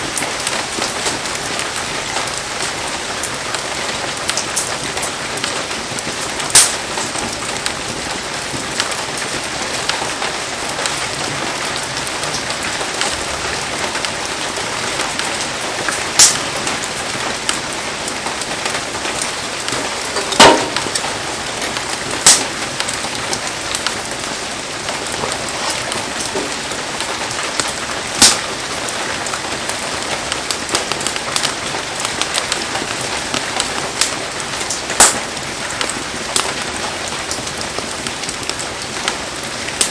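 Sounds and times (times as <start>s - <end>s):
heavy rain falling: 0.0s - 39.9s
sharp loud pops: 19.7s - 21.1s.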